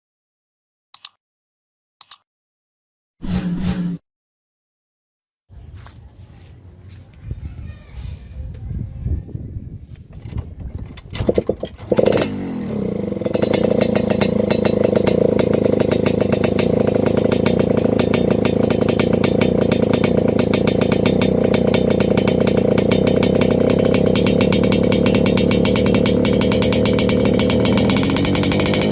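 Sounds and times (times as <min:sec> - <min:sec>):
motorcycle engine kick-start knocks: 0:10.1 - 0:28.9
two-stroke engine idling: 0:11.2 - 0:28.9.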